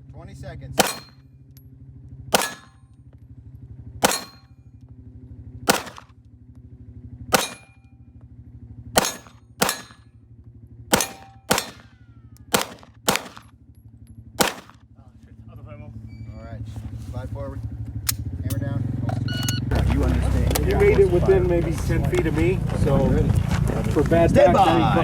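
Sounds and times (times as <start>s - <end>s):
steady low drone: 0.6s - 25.0s
handgun shots: 0.8s - 1.2s, 2.3s - 2.8s, 4.0s - 4.5s, 5.7s - 6.1s, 7.4s - 7.8s, 9.0s - 10.0s, 10.9s - 13.5s, 14.4s - 14.8s.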